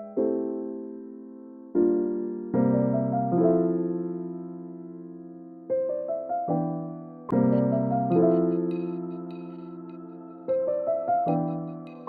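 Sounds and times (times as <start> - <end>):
soft piano chords: 0.0 - 12.0.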